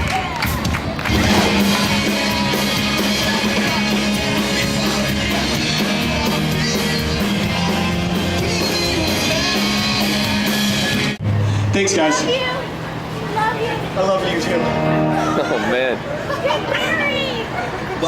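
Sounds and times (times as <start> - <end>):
rock music with guitar and singing: 1.1 - 11.2.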